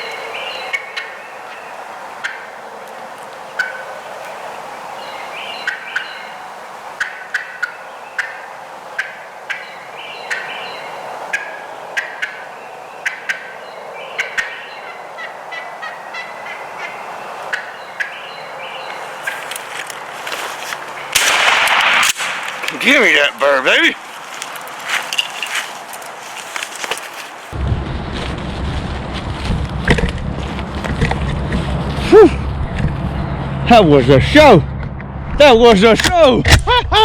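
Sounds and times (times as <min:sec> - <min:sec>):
turkeys yelping and clucking: 0:00.0 - 0:04.4, 0:05.0 - 0:21.2
outdoor hiss: 0:18.9 - 0:26.2
loud burst of noise: 0:27.6 - 0:31.3.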